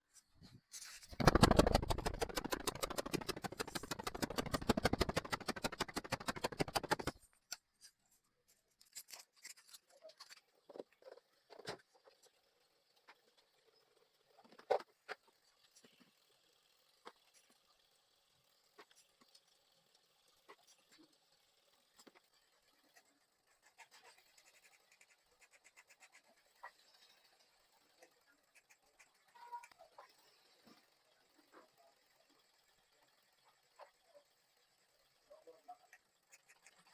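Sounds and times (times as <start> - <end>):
faint clicks and scratching: 0.0 - 36.9
car engine pulsing: 1.2 - 7.1.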